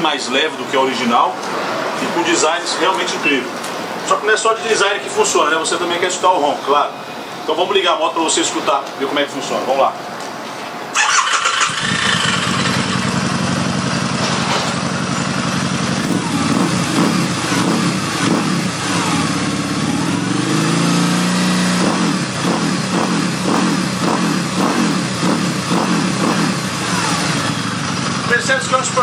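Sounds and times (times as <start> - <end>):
motorcycle engine revving: 11.0 - 29.0.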